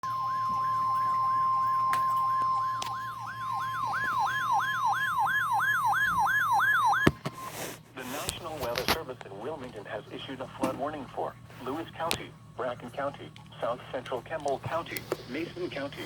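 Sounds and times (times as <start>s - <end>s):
falling siren-like sweeps: 0.0s - 7.2s
steady alarm tone: 0.0s - 7.6s.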